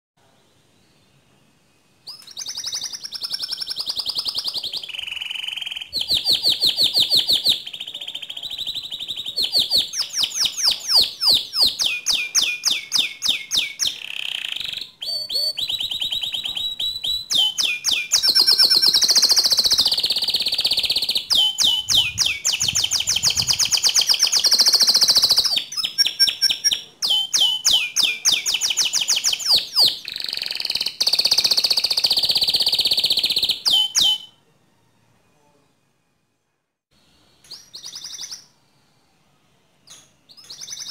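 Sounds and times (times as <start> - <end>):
canary singing trills: 2.0 - 34.4, 37.4 - 38.6, 39.9 - 40.9.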